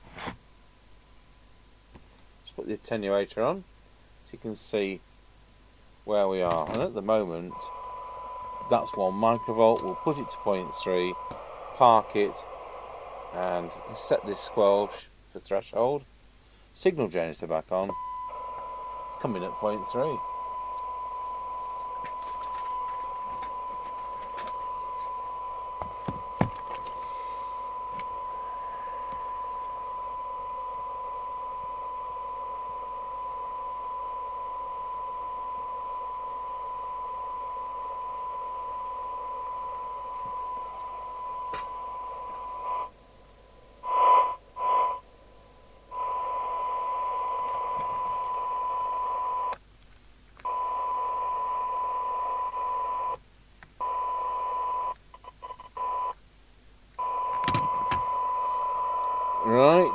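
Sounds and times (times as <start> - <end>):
radio hiss: 6.0 - 49.6, 57.0 - 59.9
radio test tone: 6.1 - 15.1, 17.7 - 43.0, 43.8 - 45.1, 45.8 - 49.6, 50.5 - 53.2, 53.8 - 55.0, 57.0 - 59.9.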